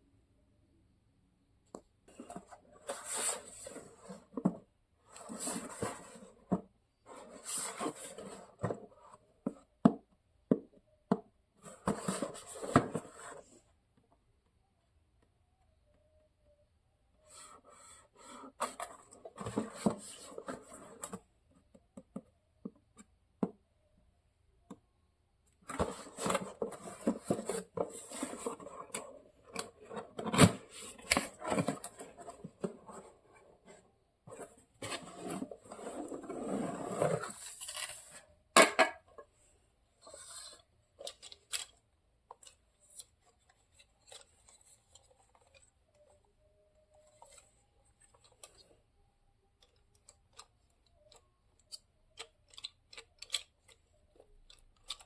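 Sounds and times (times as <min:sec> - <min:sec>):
packaging rustling and scraping: 0:25.7 - 0:38.3.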